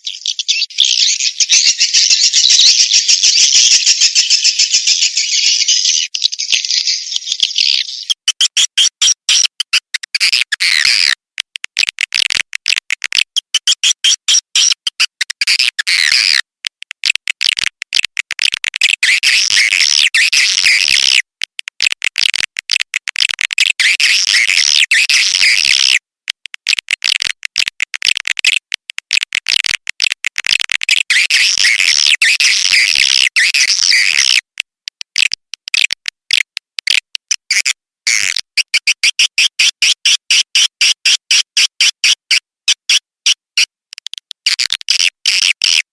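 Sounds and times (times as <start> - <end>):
swiftlet chirps twittering: 0.0 - 8.2.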